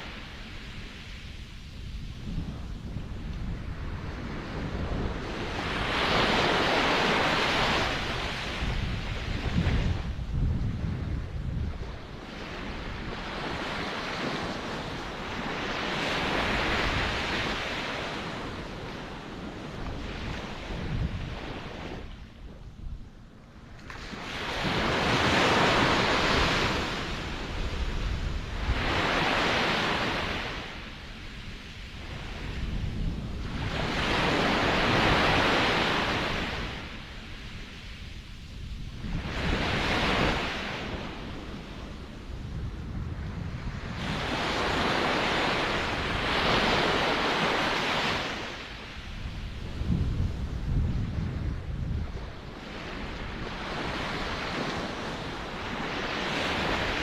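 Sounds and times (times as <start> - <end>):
ocean waves breaking: 0.0 - 10.4, 11.3 - 22.3, 23.6 - 38.2, 38.9 - 42.2, 43.5 - 50.8, 51.5 - 57.0.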